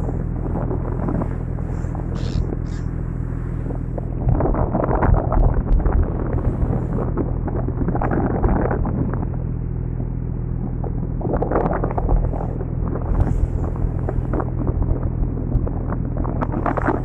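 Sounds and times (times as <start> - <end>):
boat engine running: 0.0 - 17.0
wind buffeting microphone: 0.0 - 17.0.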